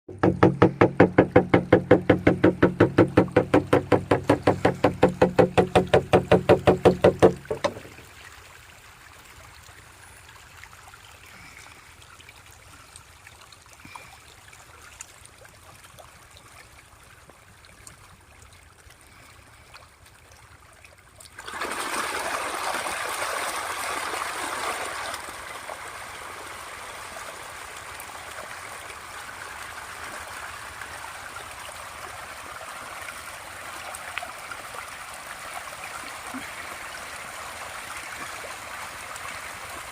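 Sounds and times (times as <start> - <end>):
fast knocking: 0.1 - 8.0
rushing water: 0.1 - 39.9.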